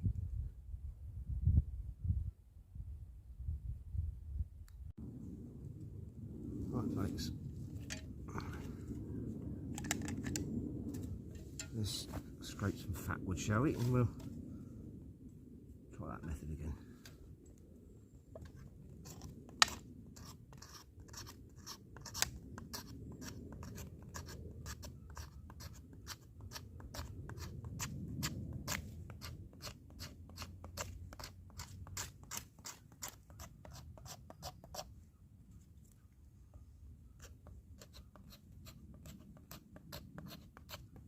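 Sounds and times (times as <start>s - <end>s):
knife scraping wood stick: 18.4s - 34.9s, 36.6s - 41.0s.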